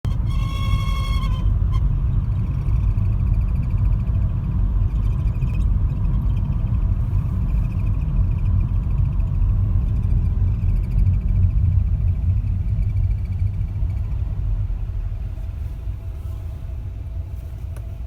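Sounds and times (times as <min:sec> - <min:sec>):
car cabin road rumble: 0:00.0 - 0:18.0
faint high-pitched whistle: 0:00.1 - 0:01.8.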